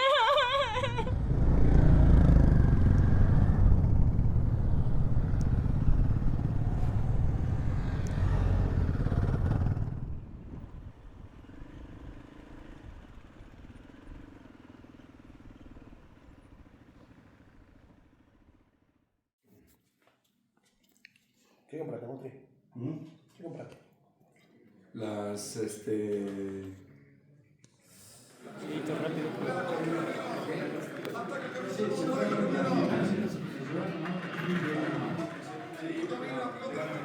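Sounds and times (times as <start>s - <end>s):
motorcycle engine rumbling: 0.0s - 18.6s.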